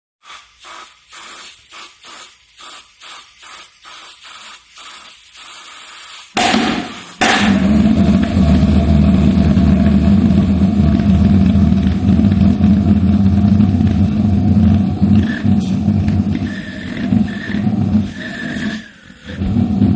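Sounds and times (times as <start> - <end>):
pulse jet engine: 6.4 - 19.9.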